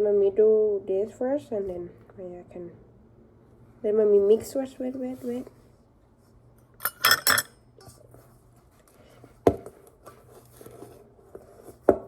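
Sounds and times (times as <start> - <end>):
utensil clinking against bowl: 6.8 - 7.6.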